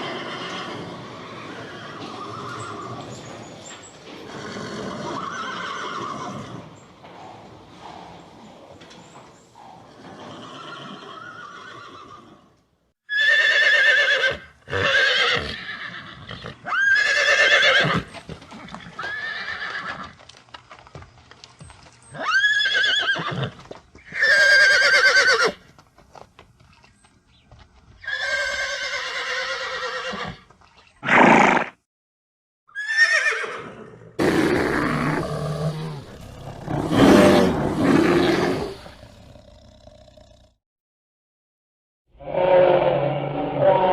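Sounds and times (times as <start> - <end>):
horse neighing and whinnying: 0.0 - 3.2, 4.1 - 6.8, 9.6 - 12.5, 13.1 - 20.2, 22.1 - 25.6, 28.0 - 30.4, 31.0 - 31.8, 32.7 - 39.9, 42.2 - 43.9.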